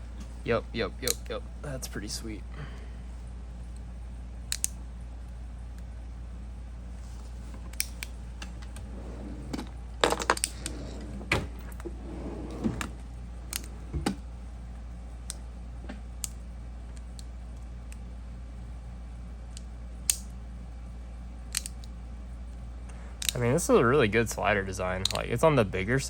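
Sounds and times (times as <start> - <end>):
metal fidget slider clicking: 21.5 - 21.8.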